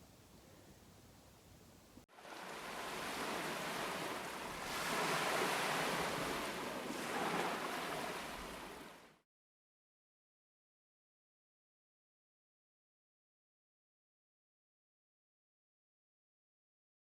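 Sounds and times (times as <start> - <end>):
ocean surf breaking: 2.2 - 9.2.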